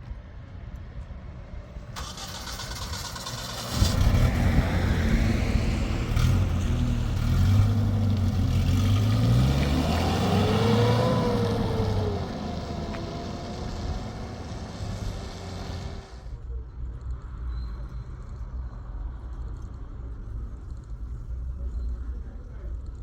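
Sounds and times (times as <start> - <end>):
engine running and revving: 2.0 - 16.3.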